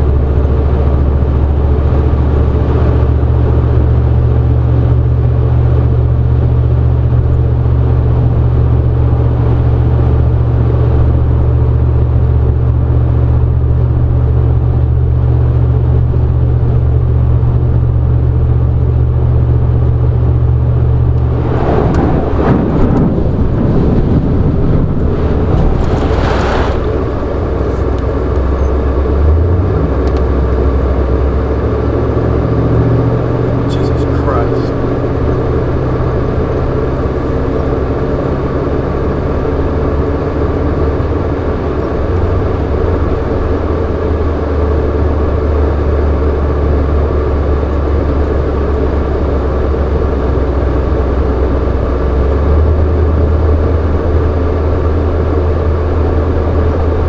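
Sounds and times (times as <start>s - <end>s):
car engine and road rumble: 0.0s - 57.0s
loud rushing noise: 20.8s - 28.3s.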